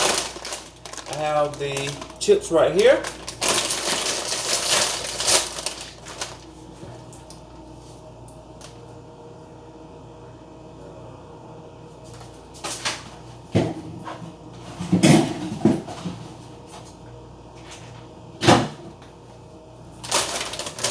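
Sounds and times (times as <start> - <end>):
chip bag crinkling: 0.0 - 6.5, 20.0 - 20.9
faint steady hum: 0.0 - 13.4.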